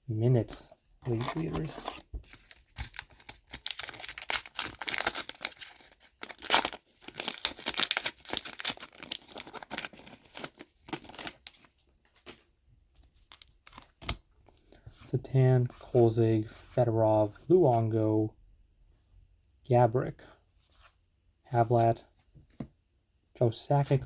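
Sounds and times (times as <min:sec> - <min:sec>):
wrapper tearing and crinkling: 0:01.2 - 0:11.5.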